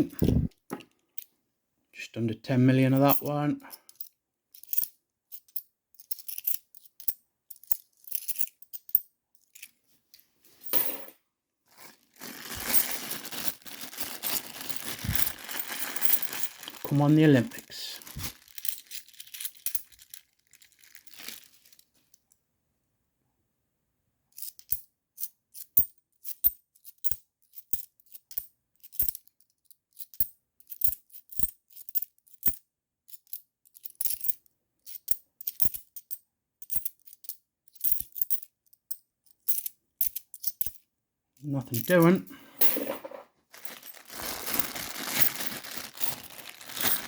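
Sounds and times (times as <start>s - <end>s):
coins clinking: 10.6s - 11.1s, 12.7s - 17.2s, 18.2s - 20.0s, 41.8s - 47.0s.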